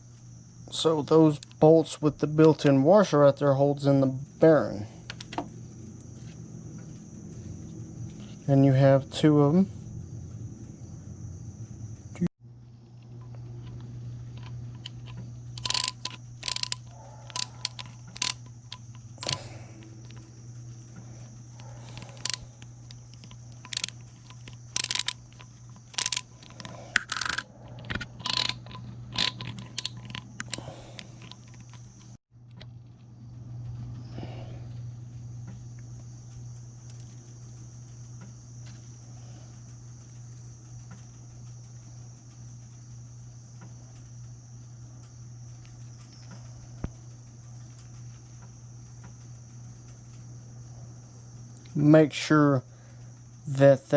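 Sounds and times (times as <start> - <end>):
low hum: 0.0 - 51.7
insect chorus: 0.0 - 53.9
small metal parts clicking: 13.6 - 20.3, 21.6 - 32.2.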